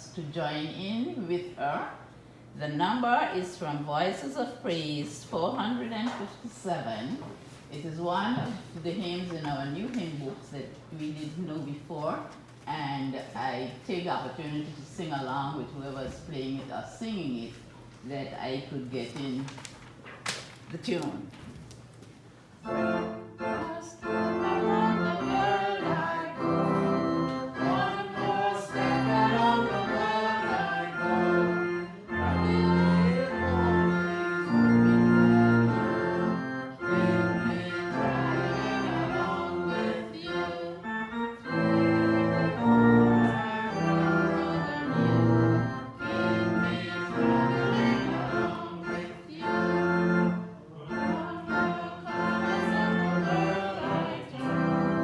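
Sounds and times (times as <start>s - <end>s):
organ playing hymn chords: 22.6s - 55.0s.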